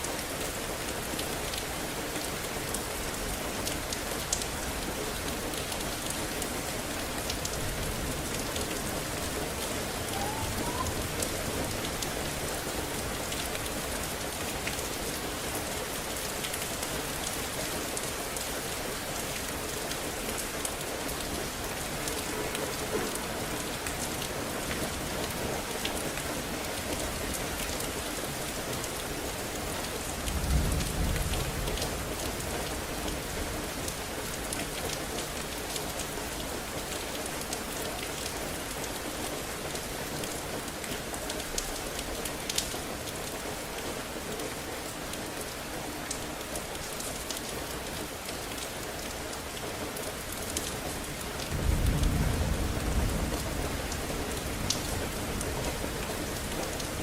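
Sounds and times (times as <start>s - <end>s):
heavy rain splashing: 0.0s - 57.0s
low rumble of thunder: 7.4s - 12.5s, 30.2s - 33.8s, 51.4s - 56.8s.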